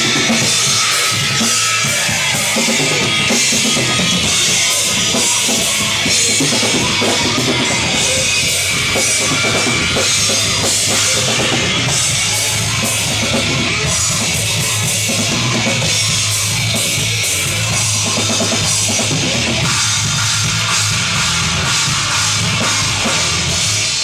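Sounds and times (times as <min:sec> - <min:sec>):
low bass: 0:00.0 - 0:24.0
rock drum beat: 0:00.0 - 0:24.0.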